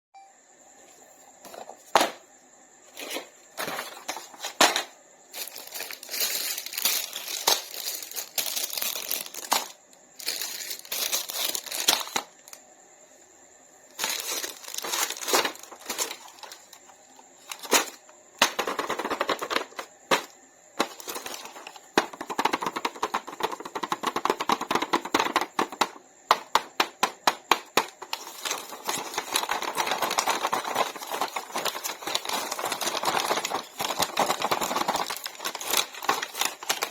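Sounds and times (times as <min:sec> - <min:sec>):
packaging crinkling and tearing: 0:05.4 - 0:12.6, 0:14.0 - 0:16.8, 0:28.0 - 0:36.9.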